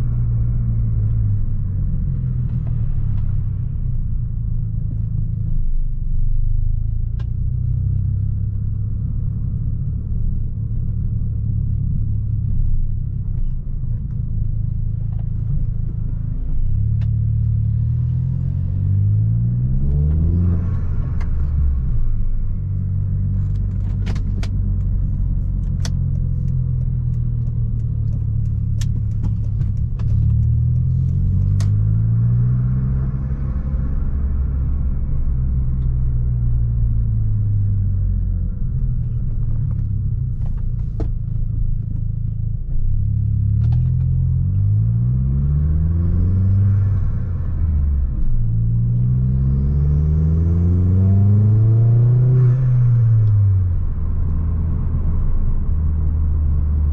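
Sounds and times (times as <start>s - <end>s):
car engine revving: 14.1s - 56.9s.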